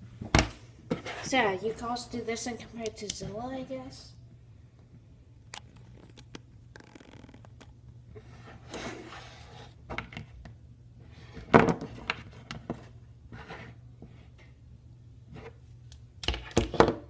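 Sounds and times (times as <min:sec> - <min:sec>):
plastic toys rustling and scraping: 0:00.9 - 0:01.9, 0:05.7 - 0:10.2.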